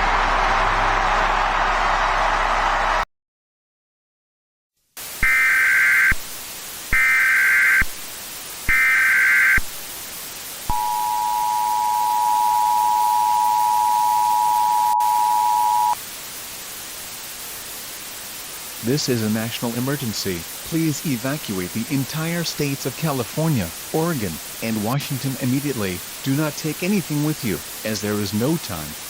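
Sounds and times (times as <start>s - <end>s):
constant hiss: 4.8s - 29.0s
data bursts: 6.9s - 7.9s, 8.7s - 9.6s, 10.7s - 16.0s
two-tone attention signal: 10.7s - 16.0s.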